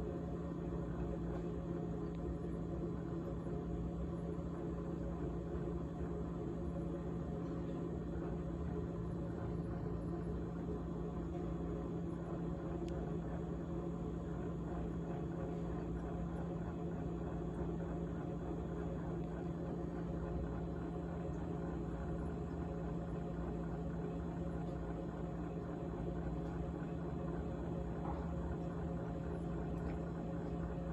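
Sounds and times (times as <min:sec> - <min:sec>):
refrigerator humming: 0:00.0 - 0:30.9.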